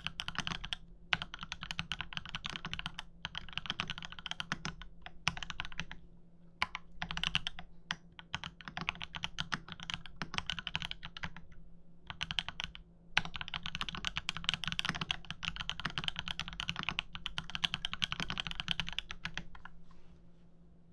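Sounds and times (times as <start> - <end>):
fast mechanical keyboard typing: 0.0 - 6.0, 6.6 - 11.5, 12.1 - 19.7.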